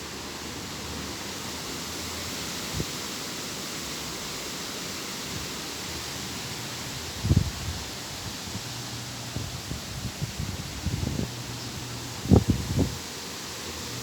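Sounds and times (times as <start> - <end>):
rushing wind: 5.2 - 14.0.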